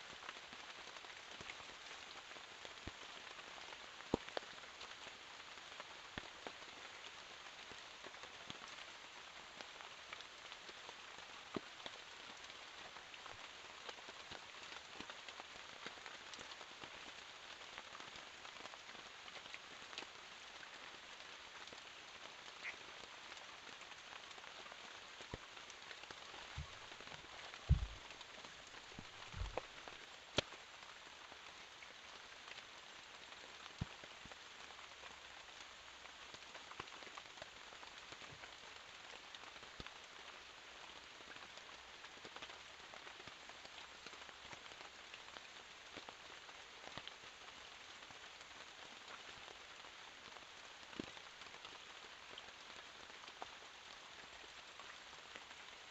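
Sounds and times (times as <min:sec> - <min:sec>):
steady rain: 0:00.0 - 0:55.9
dull low thumps: 0:27.7 - 0:28.1, 0:29.2 - 0:29.6.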